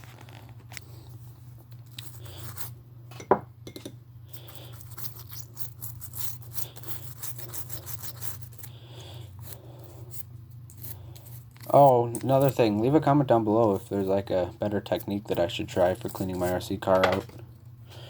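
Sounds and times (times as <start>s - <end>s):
steady low hum: 0.0s - 18.0s
small parts scraping and clicking: 1.7s - 2.7s, 4.3s - 17.4s.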